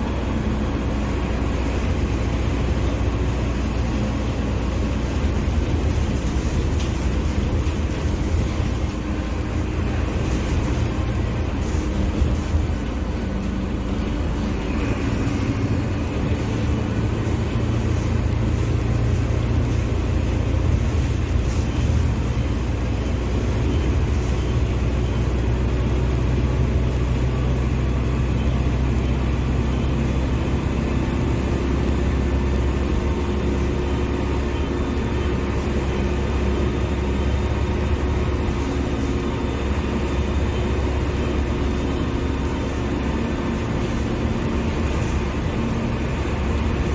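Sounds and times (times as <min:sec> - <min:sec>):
bus diesel engine running: 0:00.0 - 0:46.9.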